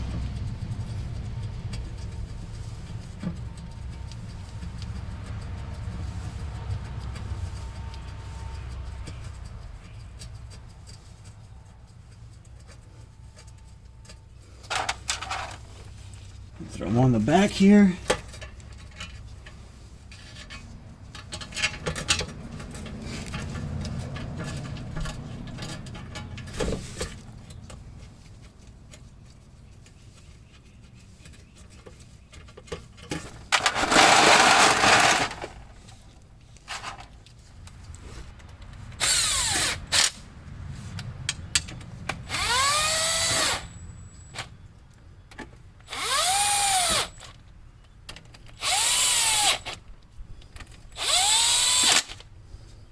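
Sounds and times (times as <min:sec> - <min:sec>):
handling noise: 0:00.0 - 0:39.1
power drill driving bolts: 0:33.6 - 0:35.6, 0:39.0 - 0:40.2, 0:42.2 - 0:44.5, 0:45.8 - 0:47.3, 0:48.5 - 0:49.8, 0:50.9 - 0:52.2.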